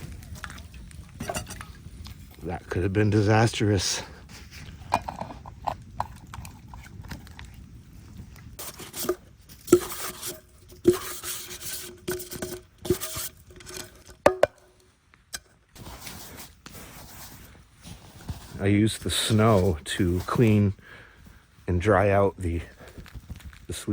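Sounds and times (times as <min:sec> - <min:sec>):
cookware scraping: 0:08.6 - 0:14.5
cookware knocking and ringing: 0:14.3 - 0:14.6.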